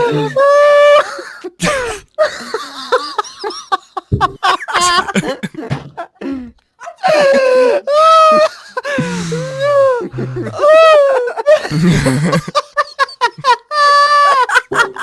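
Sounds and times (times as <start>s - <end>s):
people laughing hysterically: 0.0s - 6.2s, 6.8s - 15.0s.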